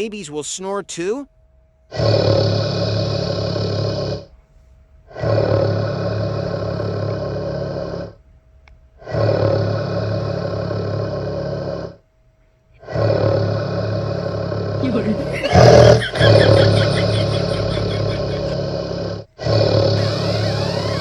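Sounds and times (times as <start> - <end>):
woman snoring loudly: 14.8 - 18.6, 19.5 - 21.0.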